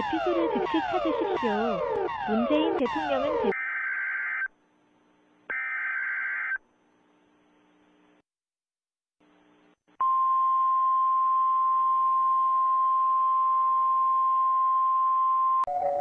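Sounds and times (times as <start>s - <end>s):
steady electronic alert tone: 0.0s - 3.6s.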